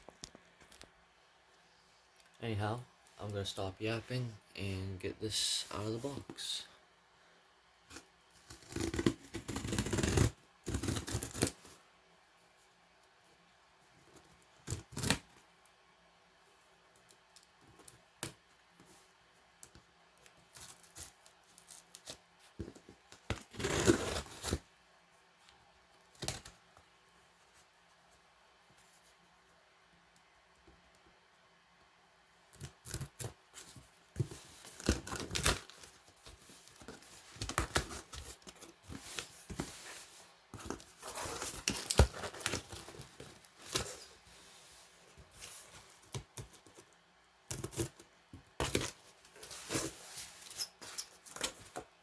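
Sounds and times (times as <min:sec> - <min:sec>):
packaging tape tearing: 0:08.5 - 0:11.6.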